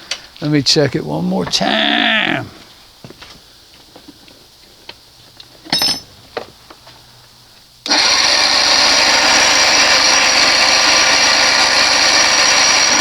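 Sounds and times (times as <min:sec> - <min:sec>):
outboard motor starter whirring: 0:07.8 - 0:13.0.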